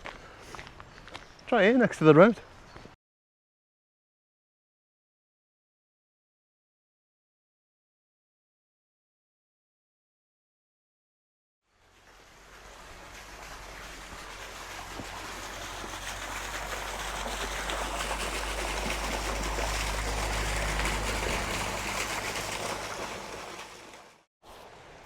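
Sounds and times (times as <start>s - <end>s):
running water: 11.7s - 25.0s.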